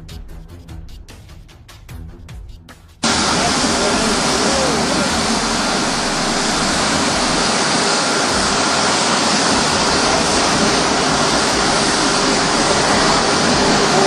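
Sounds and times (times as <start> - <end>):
loud rushing noise: 3.0 - 14.0.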